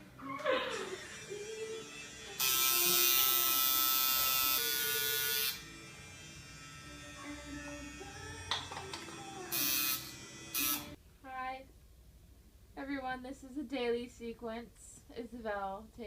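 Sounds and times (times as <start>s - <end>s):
tattoo machine buzzing: 1.4s - 8.5s, 9.1s - 11.0s.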